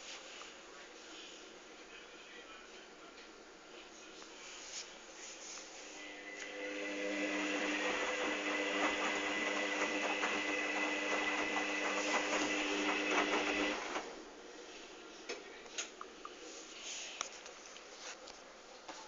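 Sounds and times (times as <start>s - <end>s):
washing machine motor whine: 5.9s - 14.4s.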